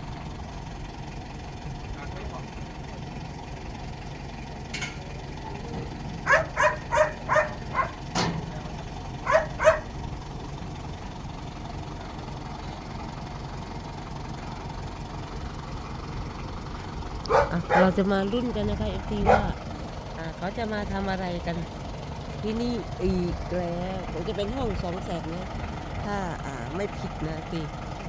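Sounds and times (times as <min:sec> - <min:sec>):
dog barking: 0:06.2 - 0:08.0, 0:09.2 - 0:09.9, 0:17.2 - 0:18.0, 0:19.2 - 0:19.6.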